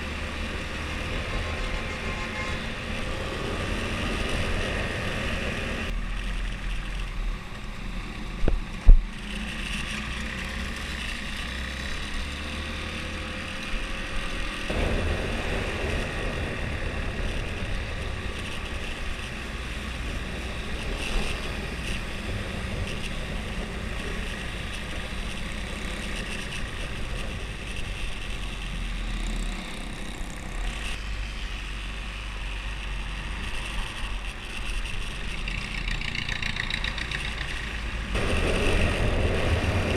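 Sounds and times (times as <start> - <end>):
wind rushing over microphone: 14.7 - 25.9, 37.9 - 39.9.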